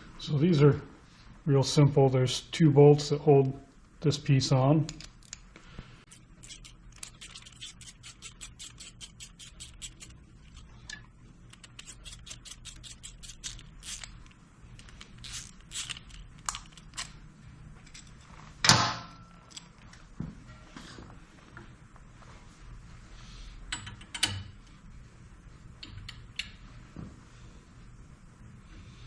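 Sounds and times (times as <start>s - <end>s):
hand ratchet clicking: 6.4s - 10.1s, 11.5s - 14.2s, 15.2s - 17.1s.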